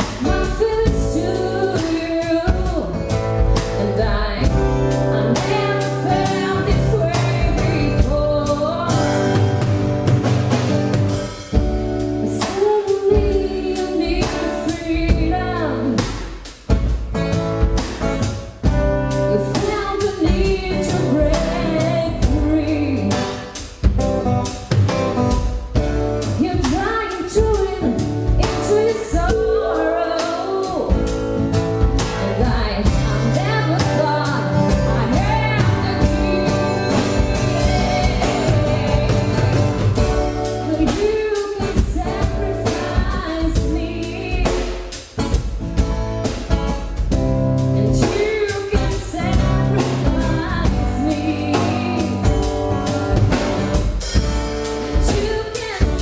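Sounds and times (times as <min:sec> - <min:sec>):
pop song through pa system: 0:00.0 - 0:56.0.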